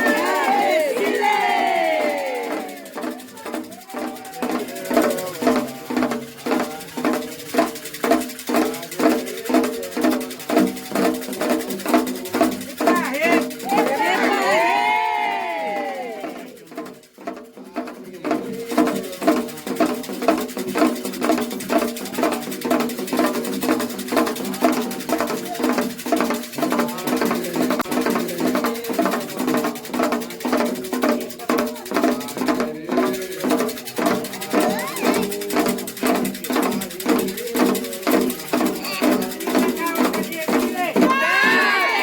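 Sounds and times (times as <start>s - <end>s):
group singing a chant: 0.0s - 42.0s
hand drums beating: 0.0s - 42.0s.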